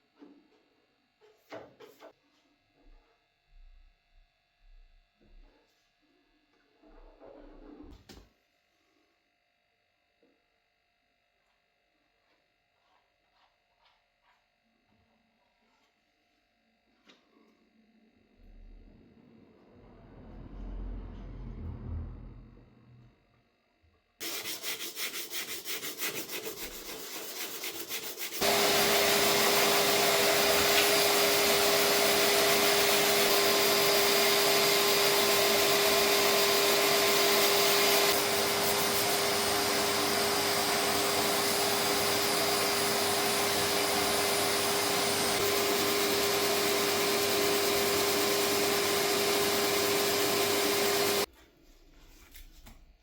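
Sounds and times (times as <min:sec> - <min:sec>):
rotary tool whining: 0:26.5 - 0:51.3.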